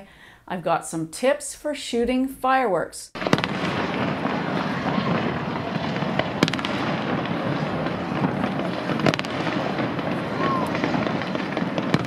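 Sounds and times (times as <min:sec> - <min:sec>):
fireworks bangs: 0:03.2 - 0:12.0.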